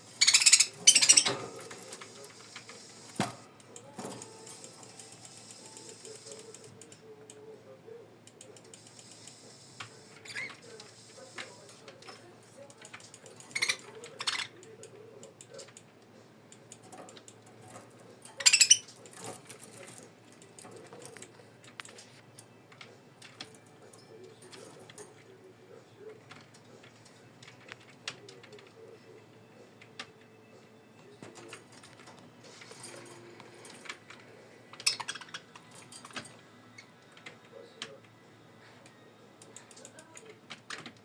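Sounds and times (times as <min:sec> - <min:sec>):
budgerigar chirps: 0:00.2 - 0:01.3.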